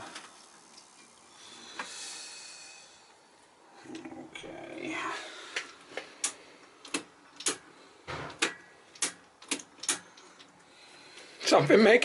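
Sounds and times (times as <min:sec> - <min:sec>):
control panel switch clicks: 0:08.3 - 0:10.0.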